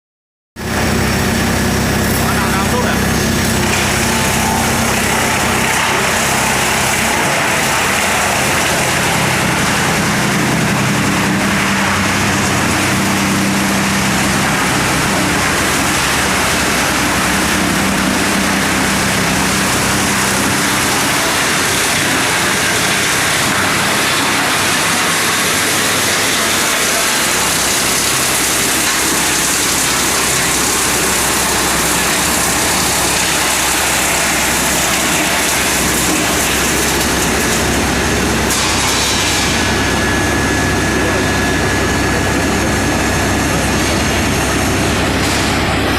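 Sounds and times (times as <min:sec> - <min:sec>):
wood chipper running: 0:00.6 - 0:45.9.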